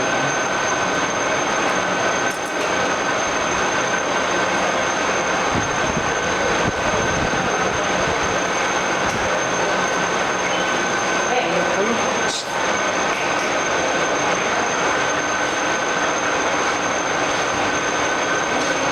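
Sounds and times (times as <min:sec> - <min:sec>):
drilling machine running: 0:00.0 - 0:18.9.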